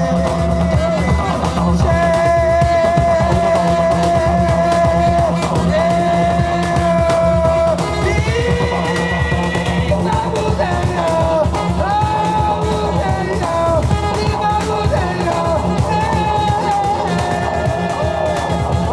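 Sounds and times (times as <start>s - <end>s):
bass: 0.0s - 18.9s
drums: 0.0s - 18.9s.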